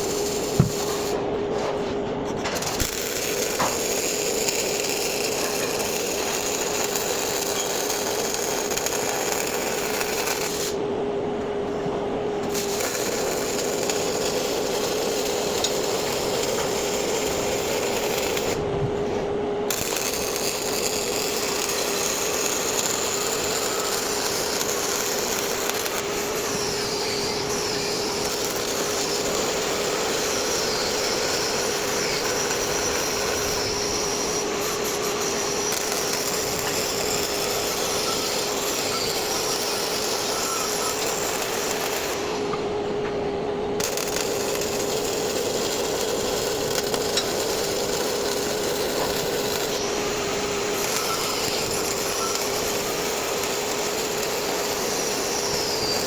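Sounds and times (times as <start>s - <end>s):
welding arc hissing: 0.0s - 1.2s, 2.5s - 10.8s, 12.4s - 18.6s, 19.7s - 42.5s, 43.8s - 56.0s.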